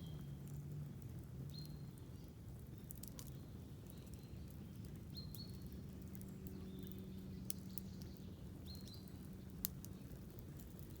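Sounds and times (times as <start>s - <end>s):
campfire crackling and popping: 9.2s - 11.0s.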